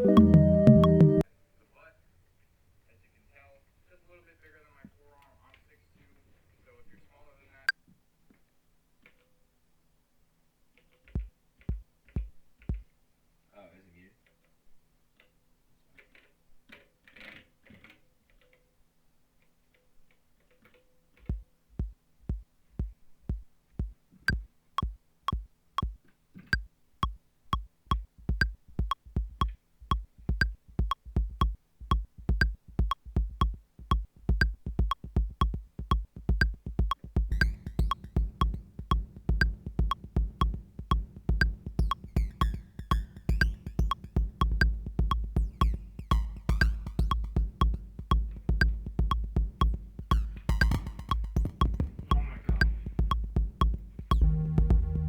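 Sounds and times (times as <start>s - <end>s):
sustained low synth: 0.0s - 1.2s, 37.2s - 55.0s
kick drum hitting steadily: 21.3s - 26.0s, 26.6s - 55.0s
faint clicks: 26.6s - 55.0s
quick high ticks: 26.6s - 55.0s.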